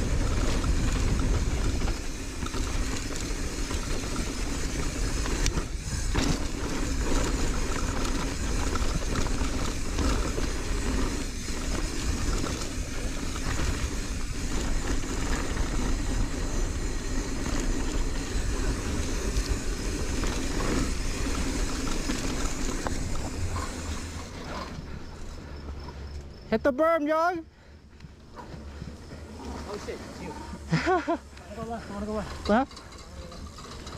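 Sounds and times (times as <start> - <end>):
wind rumble on microphone: 0.0 - 24.2
bike tyre and frame rattle: 0.0 - 26.5, 27.6 - 33.9.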